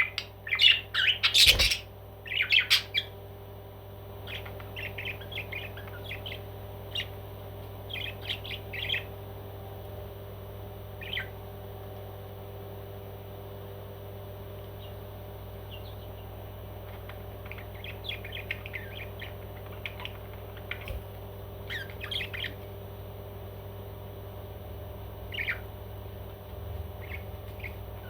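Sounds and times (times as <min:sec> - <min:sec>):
parrot squawking and chirping: 0:00.0 - 0:03.1, 0:17.4 - 0:20.8, 0:21.7 - 0:22.6, 0:25.3 - 0:25.7, 0:27.0 - 0:28.0.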